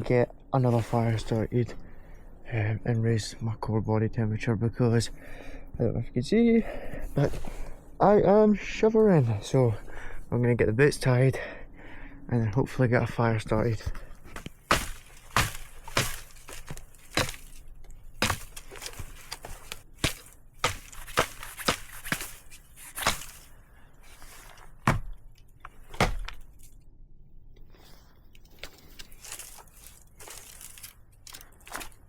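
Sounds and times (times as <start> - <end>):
rustling and scraping: 0.0 - 1.6, 13.9 - 26.8, 28.3 - 32.0.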